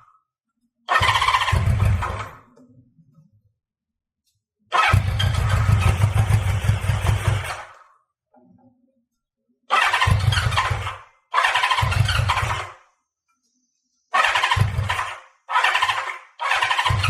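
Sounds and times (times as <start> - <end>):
motorcycle engine cranking: 1.0 - 2.6, 4.8 - 7.7, 9.8 - 12.7, 14.3 - 17.0.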